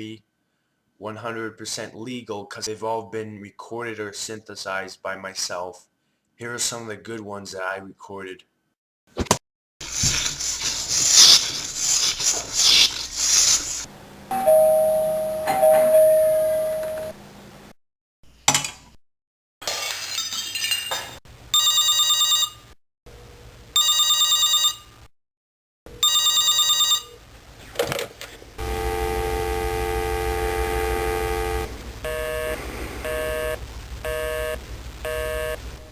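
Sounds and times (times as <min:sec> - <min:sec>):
busy signal beeping: 0:14.3 - 0:17.1, 0:28.6 - 0:35.6
telephone bell ringing: 0:14.3 - 0:17.1, 0:21.6 - 0:22.7, 0:23.8 - 0:24.9, 0:26.0 - 0:27.2
dial tone: 0:14.4 - 0:17.1, 0:28.6 - 0:35.6.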